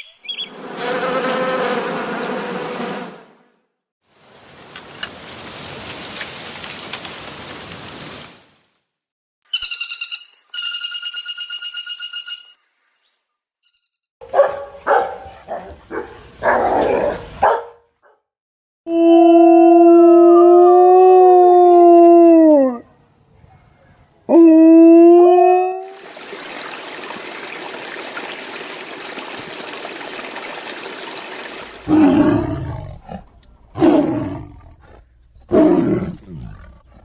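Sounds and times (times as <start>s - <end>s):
dog barking: 14.2s - 18.2s, 23.4s - 24.0s.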